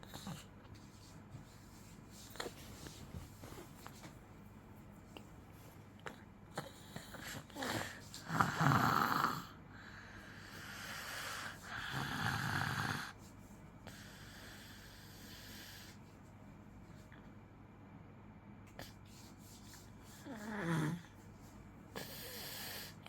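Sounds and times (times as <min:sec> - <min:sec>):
child snoring: 0:06.6 - 0:09.6, 0:10.4 - 0:13.2, 0:20.2 - 0:21.1.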